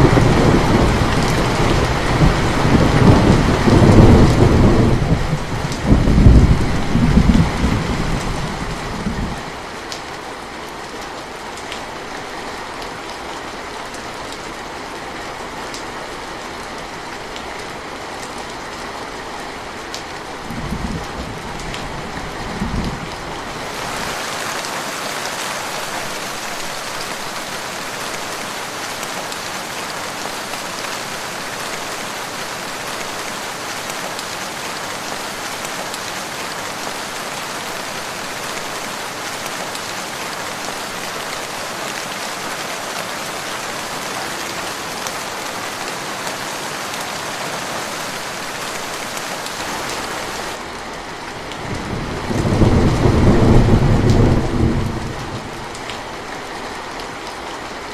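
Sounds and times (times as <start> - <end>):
low roll of thunder: 0.0 - 9.4, 20.5 - 23.0, 51.7 - 55.5
rain falling: 0.0 - 57.9.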